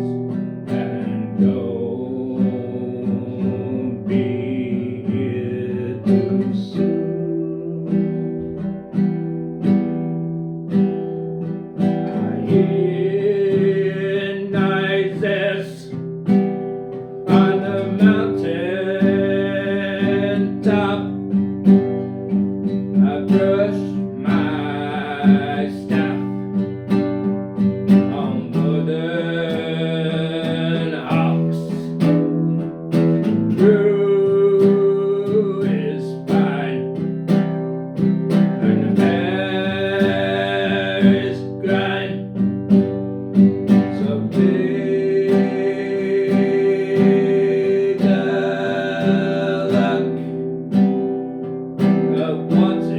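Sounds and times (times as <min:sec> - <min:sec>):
person singing: 0:00.0 - 0:09.0, 0:11.8 - 0:16.1, 0:17.2 - 0:21.3, 0:22.9 - 0:26.6, 0:28.0 - 0:32.3, 0:32.9 - 0:37.2, 0:38.2 - 0:42.5, 0:43.6 - 0:50.5, 0:51.8 - 0:52.9
strummed acoustic guitar: 0:00.0 - 0:52.9.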